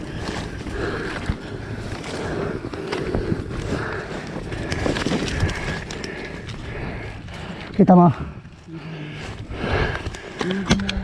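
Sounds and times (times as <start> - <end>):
rustling and scraping footsteps: 0.0 - 7.8
wind buffeting microphone: 0.0 - 11.0
sharp clicks: 10.0 - 11.0.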